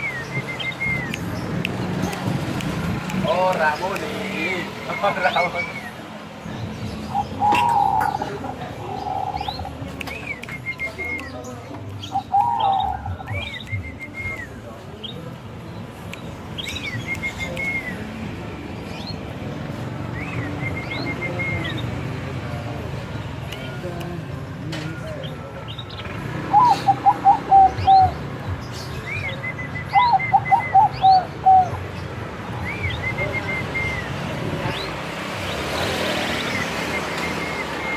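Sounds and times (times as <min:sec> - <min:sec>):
small birds chirping: 0:00.0 - 0:37.9
dove cooing: 0:07.1 - 0:09.8, 0:26.5 - 0:28.1.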